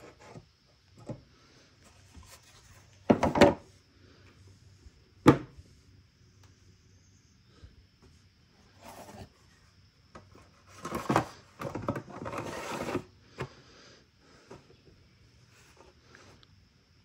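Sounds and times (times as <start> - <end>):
hard objects rubbing and shuffling: 8.7 - 9.7, 10.3 - 13.6.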